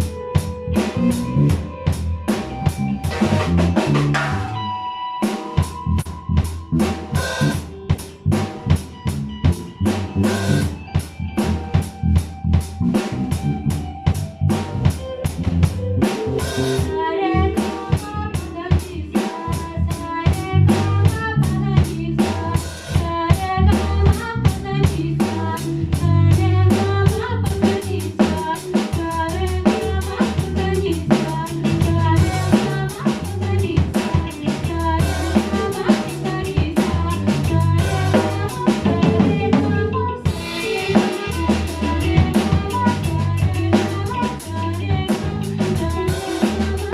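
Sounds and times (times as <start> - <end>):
bass: 0.0 - 46.9
drum kit beat: 0.0 - 46.9
melody: 1.6 - 6.8.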